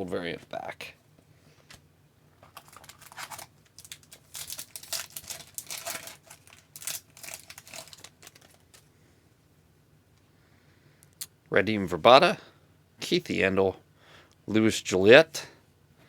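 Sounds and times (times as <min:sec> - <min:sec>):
wrapper tearing and crinkling: 0:02.4 - 0:08.9.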